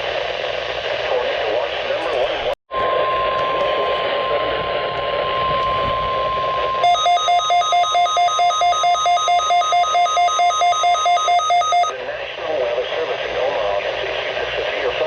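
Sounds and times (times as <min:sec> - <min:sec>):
radio static hiss: 0:00.0 - 0:06.8, 0:11.4 - 0:15.0
steady alert tone: 0:02.7 - 0:11.9
fast electronic alarm beeping: 0:02.8 - 0:12.0.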